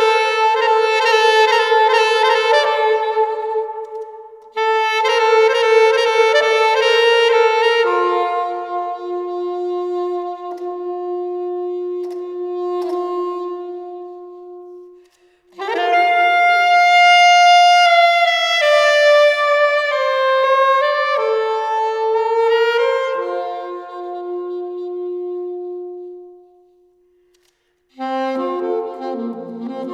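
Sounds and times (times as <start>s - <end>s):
saxophone long held notes: 0.0s - 26.8s, 28.0s - 29.9s.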